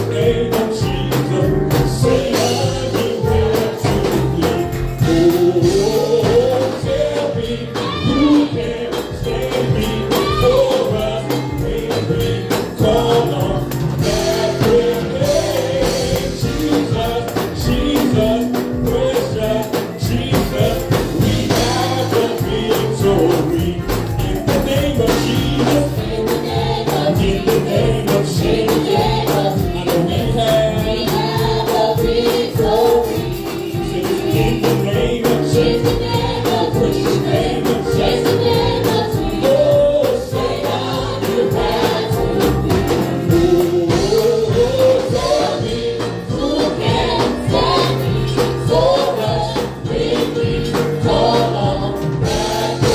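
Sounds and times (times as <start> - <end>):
band playing: 0.0 - 52.9
choir singing: 0.0 - 52.9
tambourine: 0.0 - 52.9.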